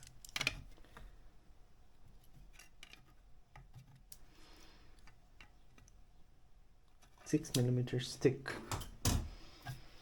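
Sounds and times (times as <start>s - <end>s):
faint clicks of small parts: 0.0s - 1.1s, 2.2s - 6.0s.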